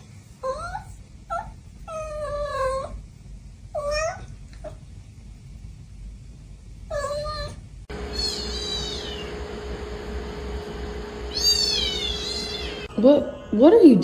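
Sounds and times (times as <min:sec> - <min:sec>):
cat meowing: 0:03.8 - 0:04.4, 0:06.9 - 0:09.3, 0:11.3 - 0:13.5
high falling cat mews: 0:07.0 - 0:09.3, 0:11.3 - 0:12.9.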